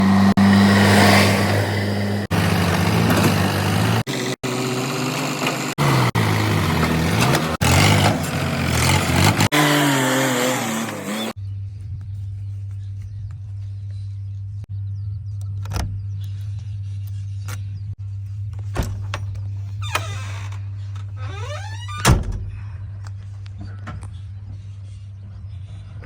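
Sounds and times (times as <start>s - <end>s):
diesel engines revving: 0.0s - 11.4s
low engine hum: 0.0s - 19.8s.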